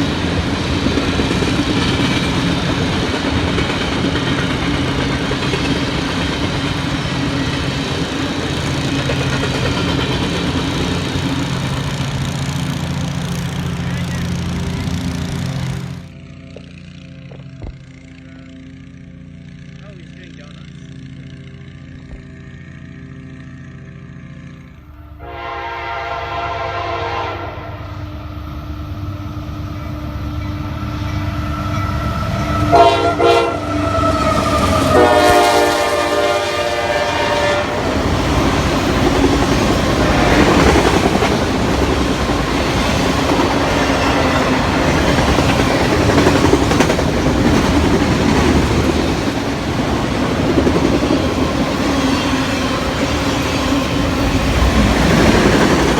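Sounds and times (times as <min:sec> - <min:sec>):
train cars rattling: 0:00.0 - 0:17.0, 0:28.6 - 0:55.9
wheels clicking over rail joints: 0:00.0 - 0:20.0, 0:37.6 - 0:55.9
locomotive horn blasts: 0:25.2 - 0:28.2, 0:31.5 - 0:38.1.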